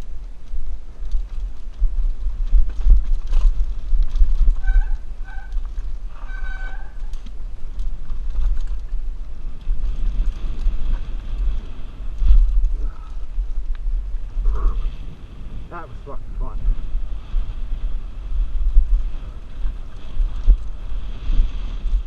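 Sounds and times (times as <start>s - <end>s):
bike clattering over trail: 0.0s - 14.2s
wind buffeting microphone: 0.0s - 22.0s.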